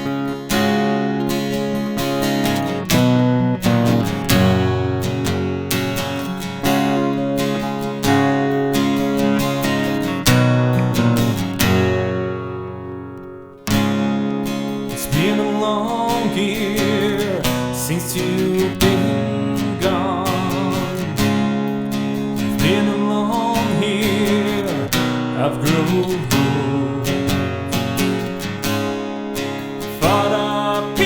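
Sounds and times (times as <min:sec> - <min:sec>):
acoustic guitar playing: 0:00.0 - 0:31.0.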